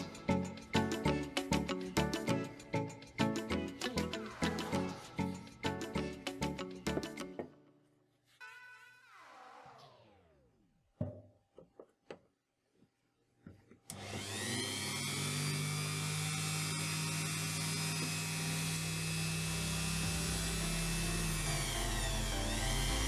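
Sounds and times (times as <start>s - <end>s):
power tool running: 13.9s - 23.0s.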